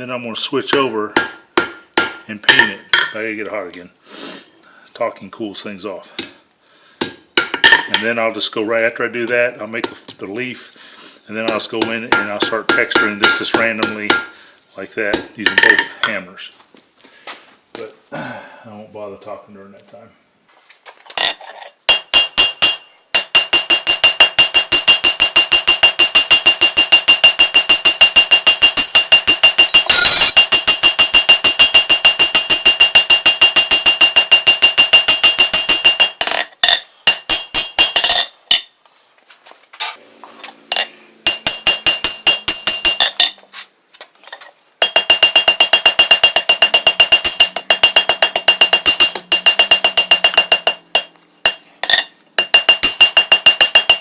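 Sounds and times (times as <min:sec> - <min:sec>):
hammer blows on steel over anvil: 0:11.4 - 0:16.0.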